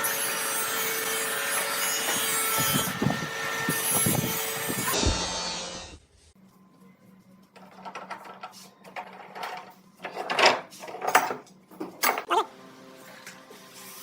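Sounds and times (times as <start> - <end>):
hand scraping wood: 2.0 - 5.2.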